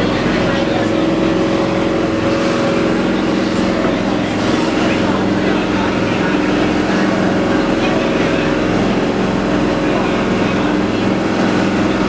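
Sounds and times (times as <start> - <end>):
boat engine droning: 0.0 - 12.0.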